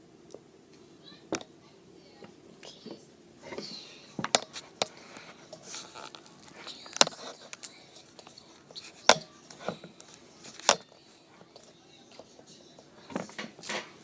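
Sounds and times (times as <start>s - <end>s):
slime squelching: 3.4s - 11.8s.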